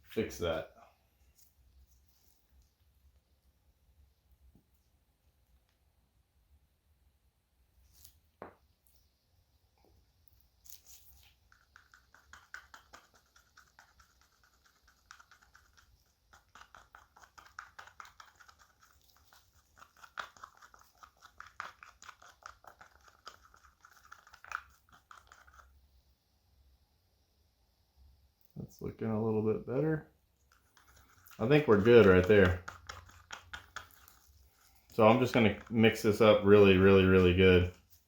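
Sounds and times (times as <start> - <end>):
stick stirring resin in a cup: 10.3 - 25.9, 30.2 - 38.0.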